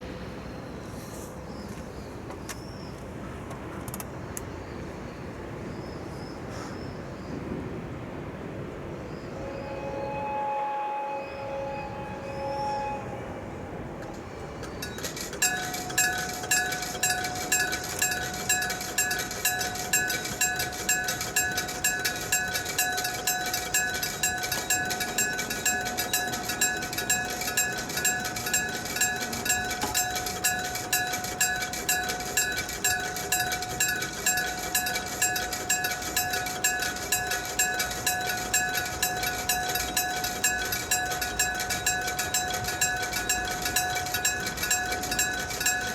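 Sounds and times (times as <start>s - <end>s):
level-crossing warning bell: 14.1s - 45.9s.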